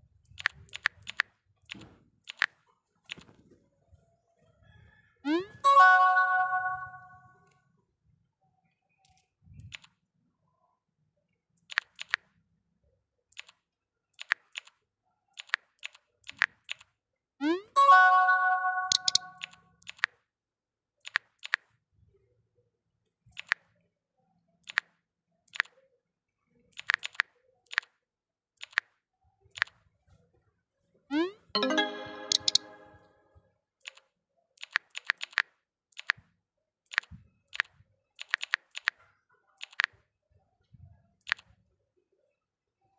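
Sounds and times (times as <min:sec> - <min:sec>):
electronic chime ringing: 0:05.6 - 0:07.2, 0:17.8 - 0:19.4, 0:31.6 - 0:33.1
sharp clicks: 0:18.9 - 0:20.1.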